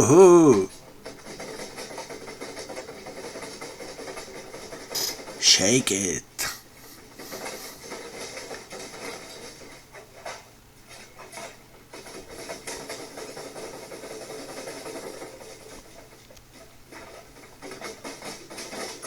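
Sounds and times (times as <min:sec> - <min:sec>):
washing machine shaking: 0:11.9 - 0:16.0.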